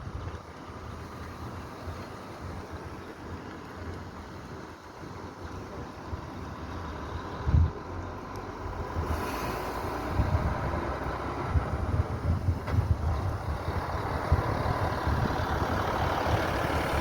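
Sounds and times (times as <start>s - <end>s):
traffic engines running: 0.0s - 17.0s
wind buffeting on microphone: 7.2s - 8.0s, 8.7s - 17.0s.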